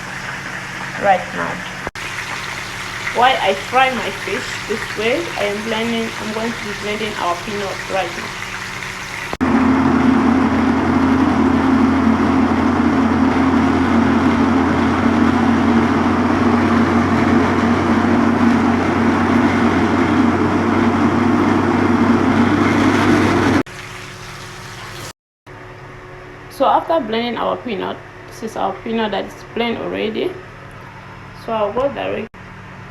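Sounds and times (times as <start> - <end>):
electric blender grinding: 0.0 - 25.1.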